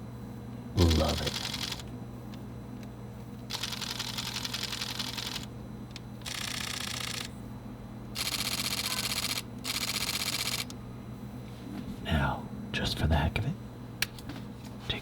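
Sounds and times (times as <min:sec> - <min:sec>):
camera shutter rapid clicking: 0:00.8 - 0:01.9, 0:03.5 - 0:05.5, 0:06.2 - 0:07.3, 0:08.2 - 0:10.7.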